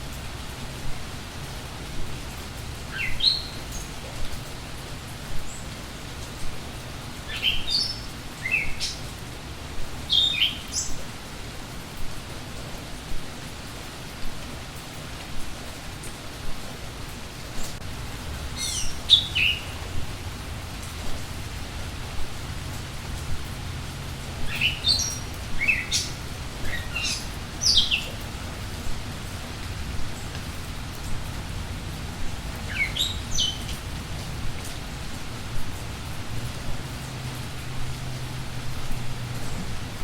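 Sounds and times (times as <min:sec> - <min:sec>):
steady rain falling: 0:00.0 - 0:40.0
songbirds whistling: 0:10.1 - 0:11.0, 0:18.6 - 0:19.8, 0:24.5 - 0:28.2, 0:32.7 - 0:33.7.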